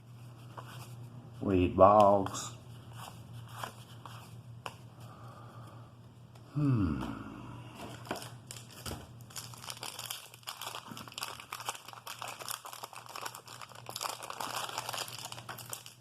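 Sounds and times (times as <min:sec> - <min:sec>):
wax paper wrapper crinkling: 0:07.9 - 0:16.0.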